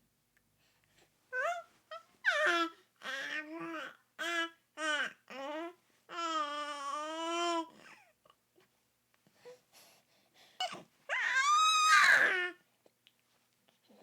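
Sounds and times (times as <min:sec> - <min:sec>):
baby cooing: 0:01.4 - 0:08.0.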